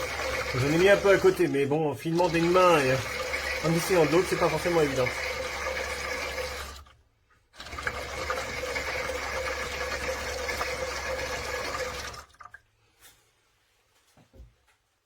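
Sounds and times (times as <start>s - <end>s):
toy washing machine motor whirring: 0.0s - 7.0s, 7.6s - 12.4s.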